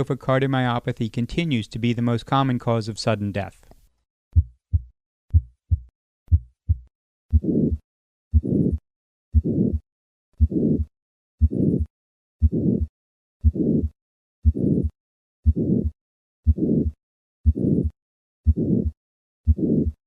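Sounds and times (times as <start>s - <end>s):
harsh heart murmur: 4.4s - 9.8s, 11.4s - 15.9s, 16.5s - 19.9s
heartbeat lub-dub: 4.4s - 9.8s, 11.4s - 15.9s, 17.4s - 18.9s.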